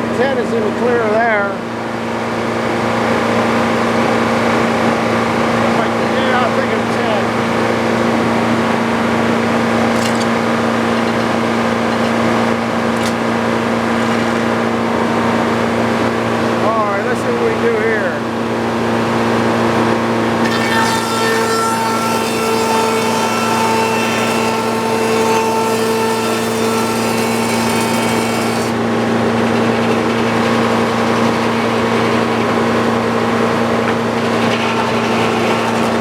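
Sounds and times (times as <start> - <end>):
sawmill engine running: 0.0 - 36.0
saw blade cutting wood: 5.5 - 7.3, 20.4 - 36.0.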